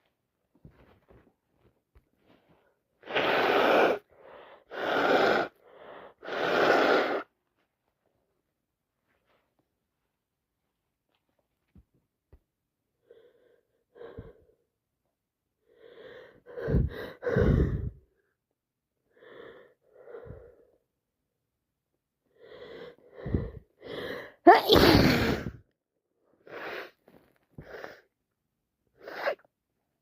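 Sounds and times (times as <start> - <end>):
woman sneezing: 24.5 - 25.6.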